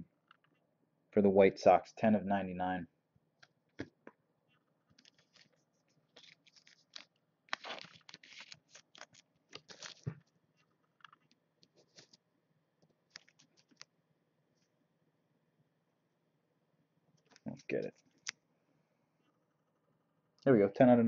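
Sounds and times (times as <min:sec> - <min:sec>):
trading card being handled: 0:04.9 - 0:12.2, 0:13.1 - 0:13.9.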